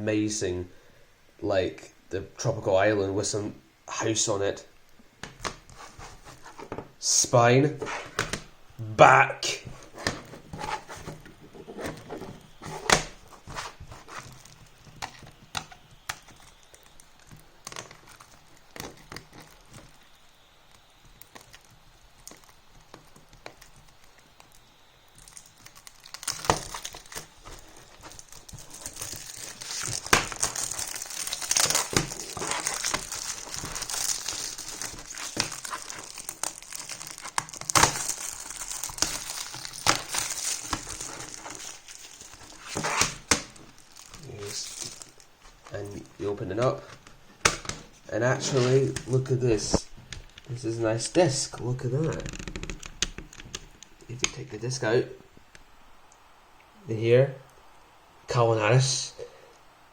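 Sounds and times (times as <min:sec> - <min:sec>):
plastic film crinkling: 0:05.2 - 0:06.8, 0:09.4 - 0:54.5.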